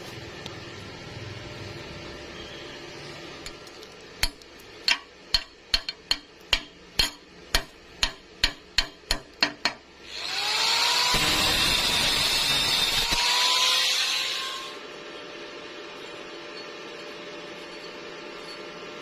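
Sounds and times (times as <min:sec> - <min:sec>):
hammer striking metal: 0:04.2 - 0:09.9
power tool whining: 0:10.0 - 0:14.9.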